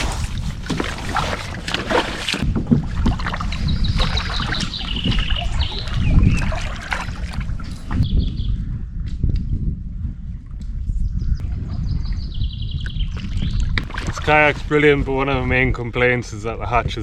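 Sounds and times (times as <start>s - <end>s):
water splashing around kayak: 0.0s - 8.1s, 13.1s - 15.7s
songbird singing: 3.5s - 8.7s, 11.0s - 13.8s.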